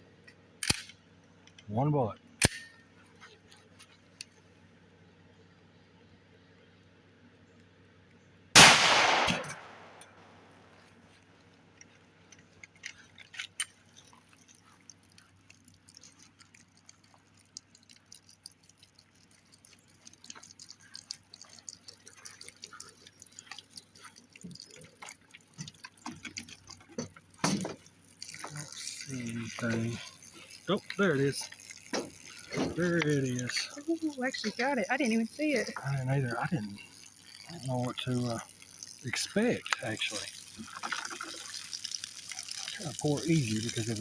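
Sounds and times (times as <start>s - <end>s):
pistol shot: 8.6s - 10.0s
water dripping: 12.3s - 44.0s.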